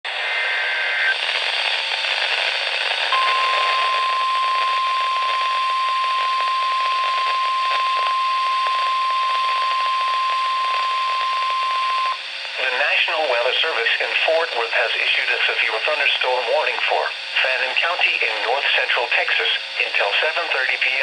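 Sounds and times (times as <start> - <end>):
radio static: 0.1 - 21.0
steady alarm tone: 3.1 - 12.2
two-tone data warble: 3.1 - 12.2.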